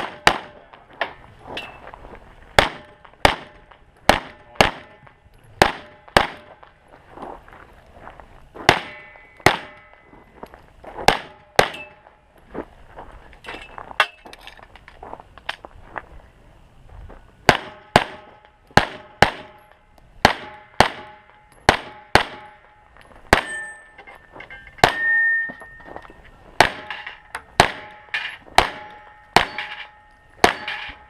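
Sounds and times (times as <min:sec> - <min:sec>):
pistol shots: 0:00.0 - 0:00.7, 0:02.6 - 0:05.0, 0:05.6 - 0:06.7, 0:08.7 - 0:10.0, 0:11.1 - 0:12.0, 0:17.5 - 0:22.7, 0:23.3 - 0:23.7, 0:24.8 - 0:25.1, 0:26.6 - 0:31.0
steel targets ringing: 0:08.7 - 0:10.1, 0:11.3 - 0:12.1, 0:20.4 - 0:31.0.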